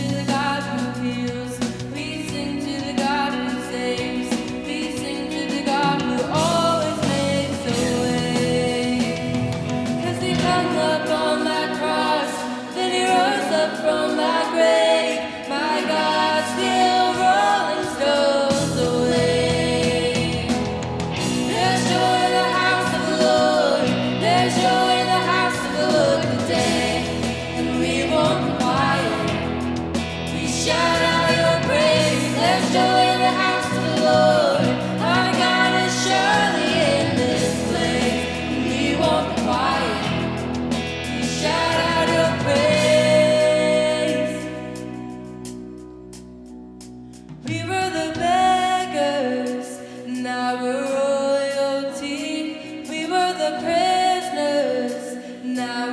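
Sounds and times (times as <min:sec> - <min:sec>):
person singing: 0:00.0 - 0:45.1, 0:47.5 - 0:55.9
congregation singing: 0:00.0 - 0:45.2
praise band playing: 0:00.0 - 0:47.1.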